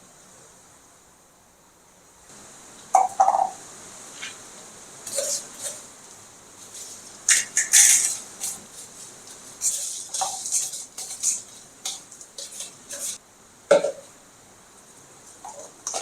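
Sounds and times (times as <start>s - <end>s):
salt crystals being scraped: 6.6s - 13.2s.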